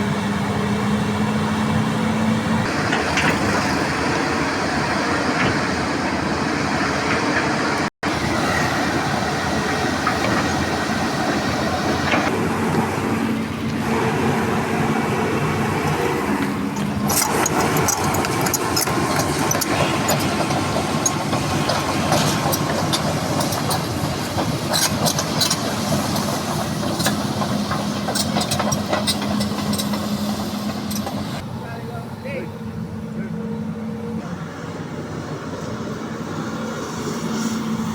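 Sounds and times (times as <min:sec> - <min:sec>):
excavator diesel engine running: 0:00.0 - 0:37.9
sharp clicks and knocks: 0:16.4 - 0:31.4.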